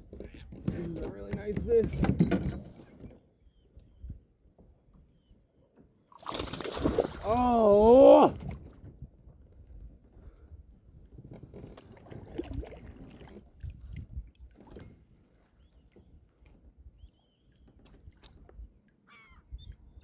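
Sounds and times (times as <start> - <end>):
water sloshing and splashing: 6.1 - 9.0, 11.1 - 16.9, 17.5 - 19.0.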